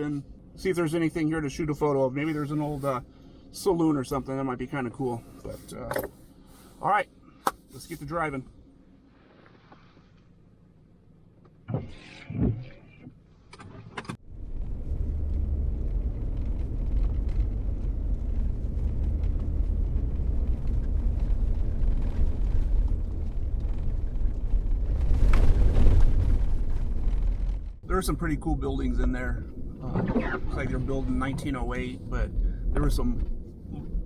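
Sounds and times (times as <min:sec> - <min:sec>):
car engine driving: 0:13.9 - 0:34.0
road rumble: 0:14.1 - 0:34.0.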